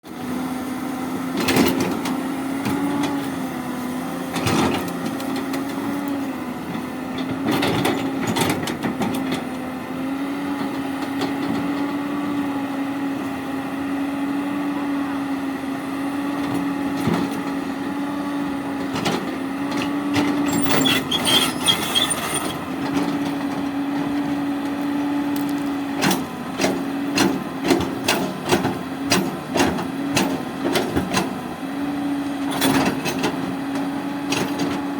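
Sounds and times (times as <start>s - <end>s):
excavator diesel engine running: 0.1s - 34.9s
high squeal: 20.5s - 22.6s.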